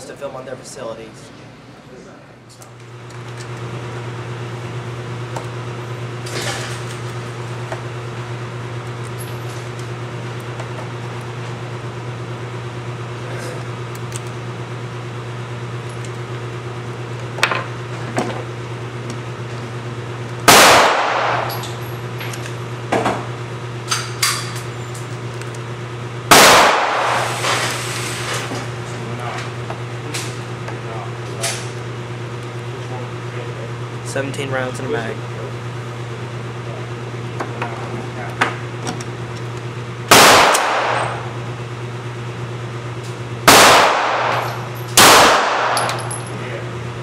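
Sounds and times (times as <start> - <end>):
ventilation hum: 0.0 - 47.0
loud gunshots echoing: 20.5 - 21.5, 26.3 - 27.4, 40.1 - 41.3, 43.4 - 45.9.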